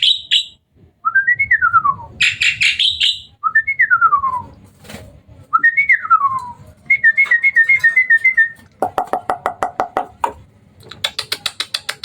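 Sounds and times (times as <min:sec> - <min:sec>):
rapid clicking chatter: 0:10.8 - 0:12.0.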